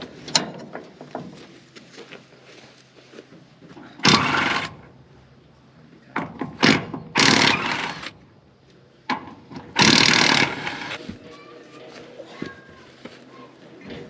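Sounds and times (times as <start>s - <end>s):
power tool bursts: 4.0s - 4.8s, 6.6s - 8.2s, 9.8s - 11.0s.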